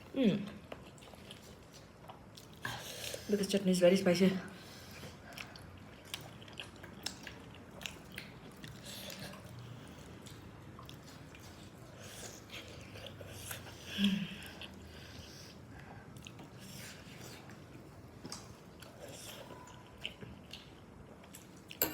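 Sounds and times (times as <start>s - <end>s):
chewing and biting food: 0.5s - 3.2s, 4.9s - 21.8s.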